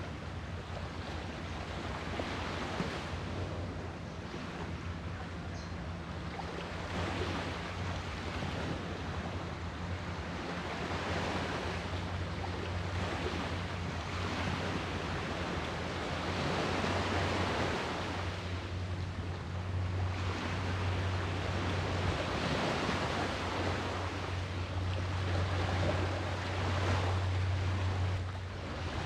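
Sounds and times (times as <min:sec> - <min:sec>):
steady low hum: 0:00.0 - 0:29.0
waves breaking: 0:00.0 - 0:29.0.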